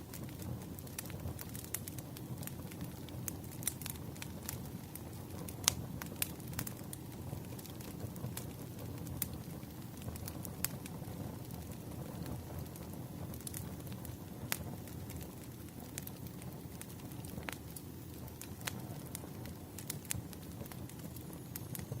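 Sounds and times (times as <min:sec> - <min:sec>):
low rumble of flames: 0:00.0 - 0:22.0
firewood popping: 0:00.1 - 0:22.0.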